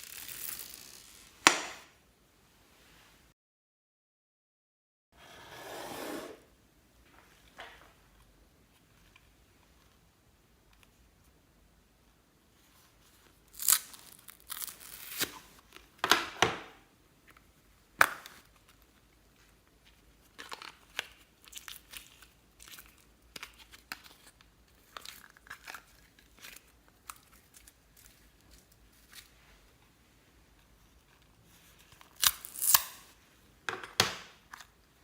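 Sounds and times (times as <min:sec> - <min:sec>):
packaging tearing: 0:00.0 - 0:01.3, 0:13.5 - 0:15.6, 0:32.0 - 0:33.1.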